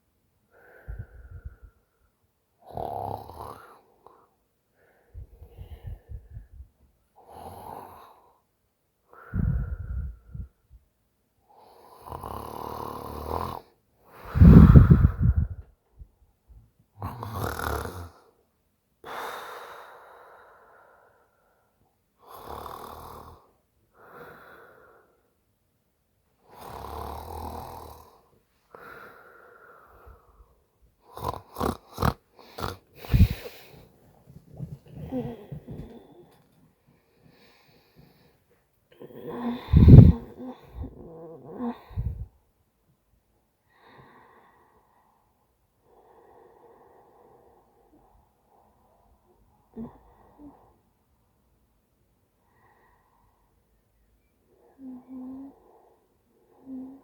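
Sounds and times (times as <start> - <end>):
woman snoring: 2.7 - 3.8, 11.8 - 15.6, 17.0 - 18.2, 22.2 - 23.4, 26.5 - 29.3, 31.0 - 33.8, 34.9 - 36.4, 38.9 - 42.3, 49.7 - 50.8, 54.7 - 57.0
short choppy breaths: 14.3 - 15.6, 32.0 - 36.4, 39.6 - 41.0.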